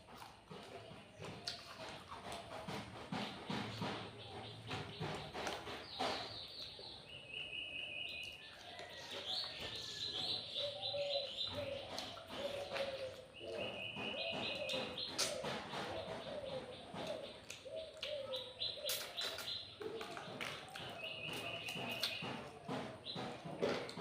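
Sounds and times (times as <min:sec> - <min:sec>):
eating mouth clicks: 0:14.6 - 0:15.6, 0:16.9 - 0:22.3.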